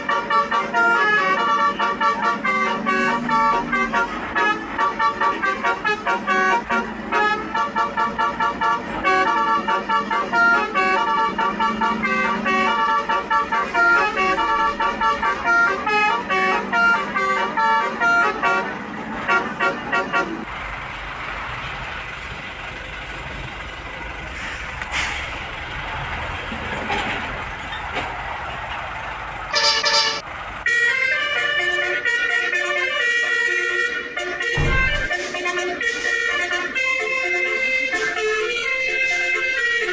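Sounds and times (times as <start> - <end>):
multi-tone bus horn melody: 0.0 - 20.5, 29.5 - 39.9.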